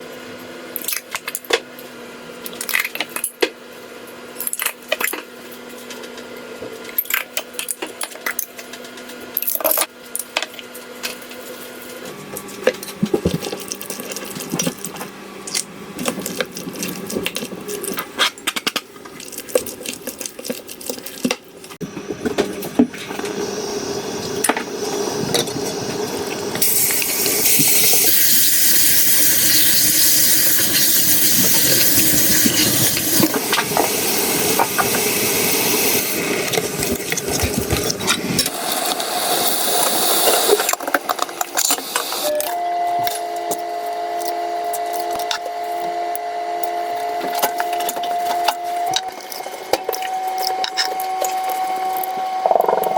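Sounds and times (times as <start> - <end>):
utensils clinking against bowls: 46.6 - 52.9.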